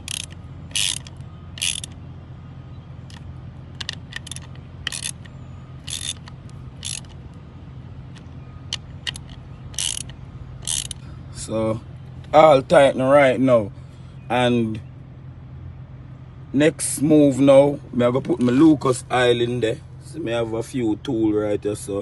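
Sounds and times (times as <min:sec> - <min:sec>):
ratchet clicks: 0:00.0 - 0:02.0, 0:03.1 - 0:07.2, 0:08.1 - 0:11.0
ratchet wrench rasping: 0:00.0 - 0:02.0, 0:03.1 - 0:07.2, 0:08.7 - 0:11.0
steady low hum: 0:00.0 - 0:22.0.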